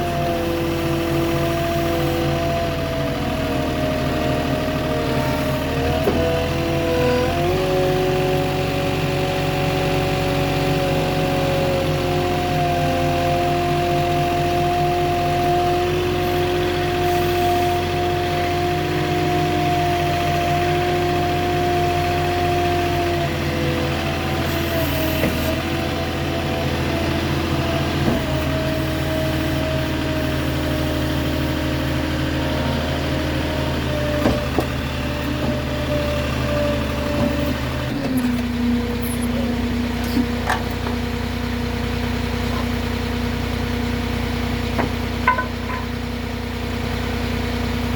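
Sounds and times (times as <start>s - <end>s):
forklift engine running: 0.0s - 47.9s
short knocks: 44.8s - 45.9s.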